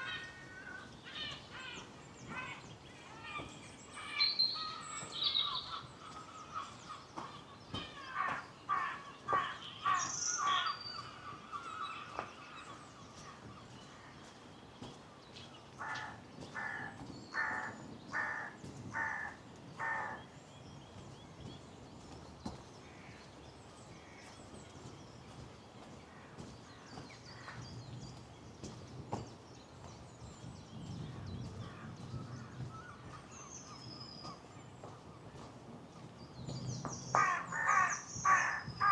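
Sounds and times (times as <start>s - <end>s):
small birds chirping: 0.0s - 38.9s
bird harsh calls: 37.1s - 38.9s.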